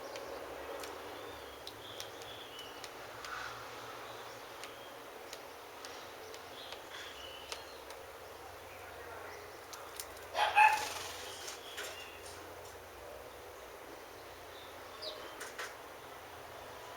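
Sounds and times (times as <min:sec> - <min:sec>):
dog barking: 0:10.4 - 0:11.0.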